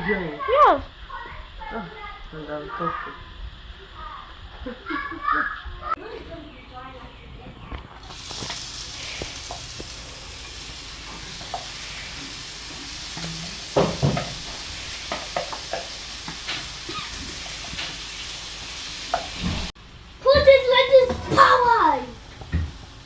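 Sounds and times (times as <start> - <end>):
meat sizzling in pot: 7.9 - 23.0
spoon scraping and knocking pot: 13.1 - 18.0.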